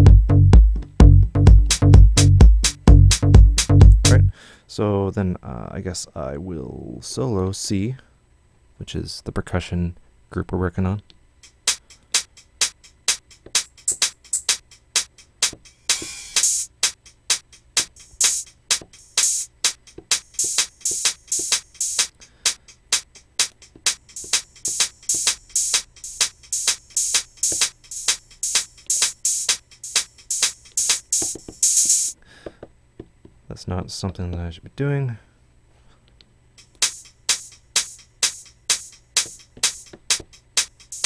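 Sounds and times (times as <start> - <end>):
open hi-hat wash: 0.0 - 4.4, 11.2 - 32.2, 36.4 - 41.0
hi-hat ticks: 11.4 - 32.2, 36.2 - 41.0.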